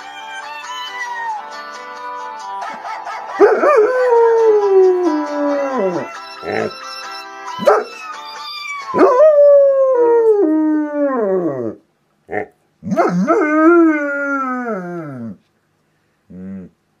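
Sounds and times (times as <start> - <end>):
dog howling and yelping: 3.3 - 6.8, 7.6 - 11.8.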